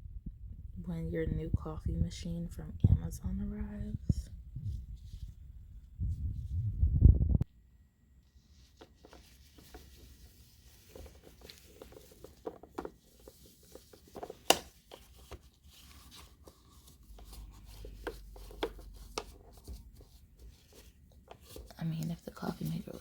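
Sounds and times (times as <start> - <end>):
plastic wrapping rustling: 8.2 - 23.0.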